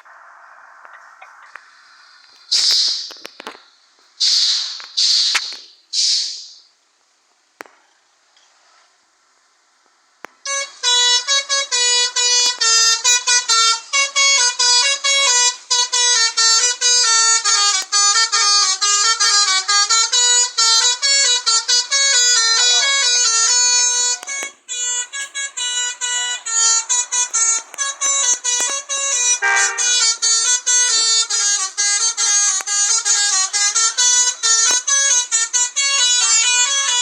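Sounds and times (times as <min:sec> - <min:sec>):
hiss: 0:00.0 - 0:06.8
bus melody horn playing tune: 0:10.4 - 0:37.0.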